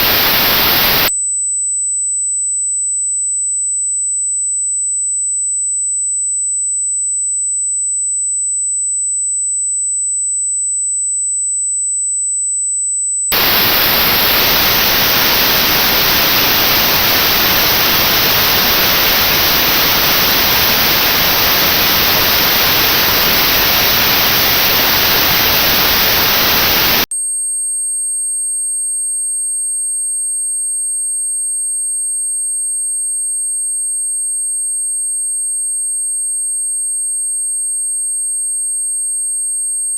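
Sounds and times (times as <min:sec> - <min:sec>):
notched white noise hiss: 0:00.0 - 0:01.1, 0:13.4 - 0:27.1
faint steady tones: 0:13.4 - 0:27.1.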